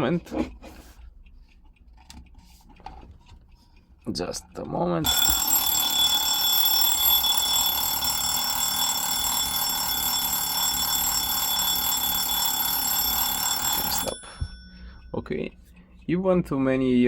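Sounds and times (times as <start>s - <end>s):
alarm clock bell ringing: 5.0s - 15.5s.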